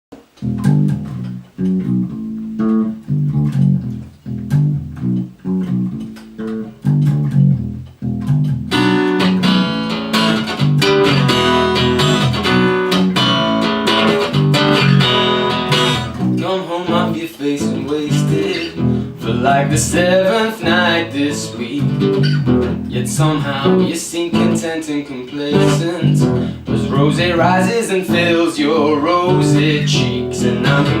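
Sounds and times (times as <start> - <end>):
picked guitar riff: 0.2 - 31.0.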